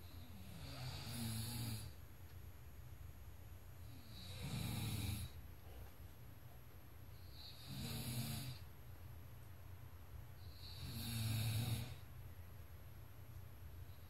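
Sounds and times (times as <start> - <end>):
person snoring: 0.3 - 2.0, 3.9 - 5.4, 7.4 - 8.6, 10.5 - 12.0.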